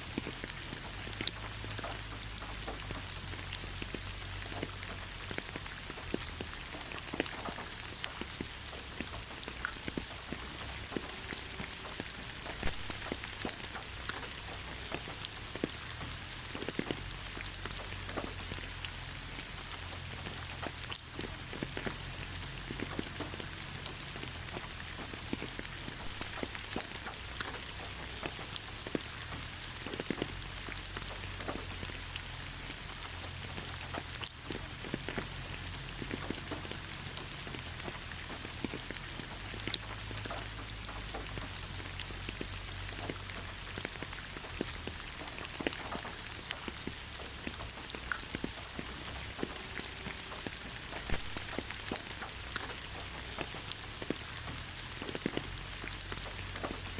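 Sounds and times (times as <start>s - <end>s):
drops ticking on a surface: 0.0s - 56.9s
steady rainfall: 0.0s - 56.9s.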